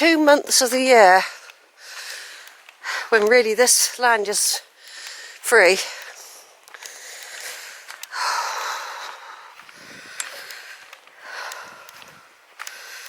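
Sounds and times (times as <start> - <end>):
person breathing: 1.2 - 3.2, 4.6 - 13.0.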